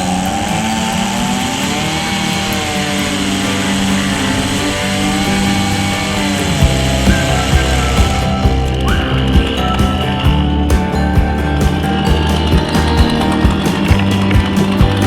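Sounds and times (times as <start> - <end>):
background music with a beat: 0.0 - 15.0
chainsaw engine running: 0.0 - 15.0.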